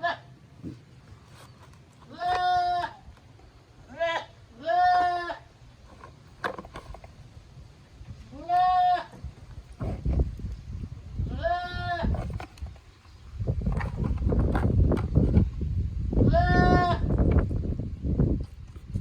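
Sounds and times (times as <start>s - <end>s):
goats bleating: 2.1s - 3.0s, 3.9s - 5.4s, 8.3s - 9.2s.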